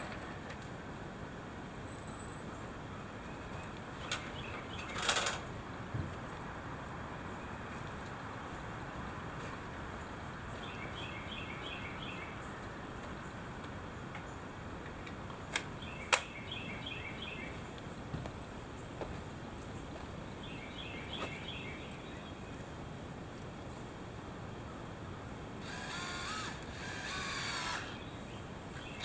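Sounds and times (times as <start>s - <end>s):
songbird singing: 1.8s - 5.1s, 9.9s - 18.1s, 19.6s - 22.9s, 26.4s - 29.0s.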